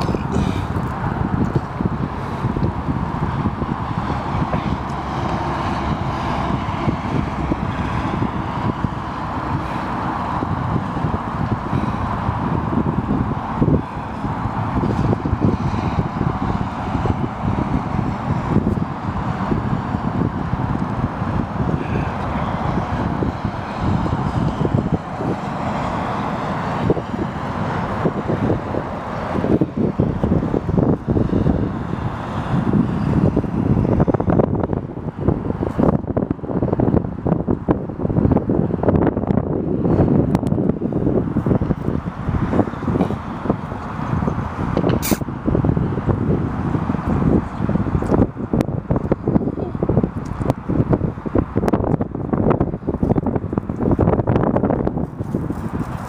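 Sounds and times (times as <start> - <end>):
wind buffeting microphone: 0.0 - 56.0.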